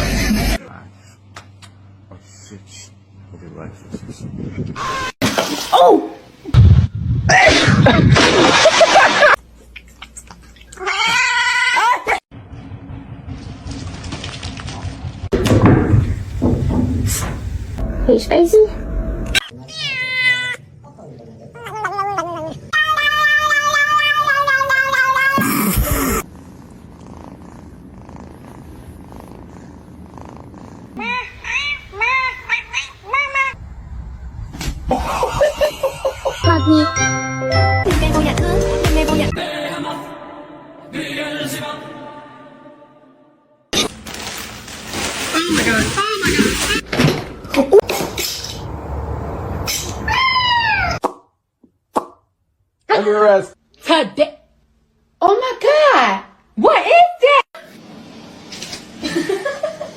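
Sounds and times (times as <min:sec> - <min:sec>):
cat yowling: 0:21.6 - 0:26.2, 0:50.0 - 0:51.0
cat purring: 0:26.2 - 0:31.0.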